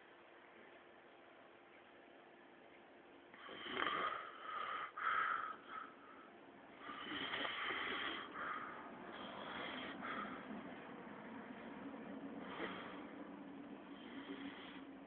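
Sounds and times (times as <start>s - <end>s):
man snoring: 3.4s - 5.0s, 6.8s - 8.4s, 13.9s - 14.9s.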